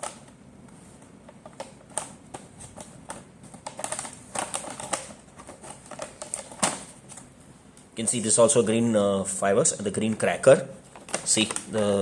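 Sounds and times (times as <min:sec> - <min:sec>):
cardboard packaging crinkling: 0:01.5 - 0:07.3, 0:10.2 - 0:12.0.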